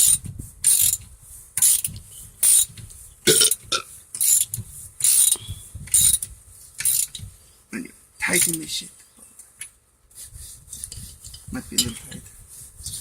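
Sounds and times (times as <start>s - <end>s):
socket wrench ratchet clicking: 0.0s - 1.0s, 1.6s - 2.7s, 4.2s - 7.2s.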